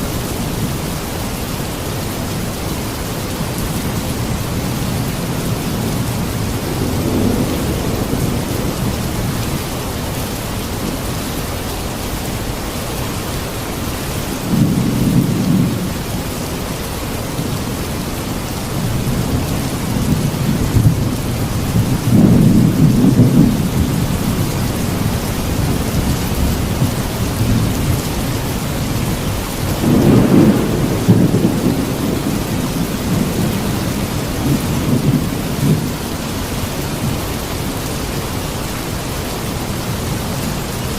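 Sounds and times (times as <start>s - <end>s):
steady rain falling: 0.0s - 40.9s
thunder rumbling: 2.3s - 12.6s, 14.2s - 38.2s.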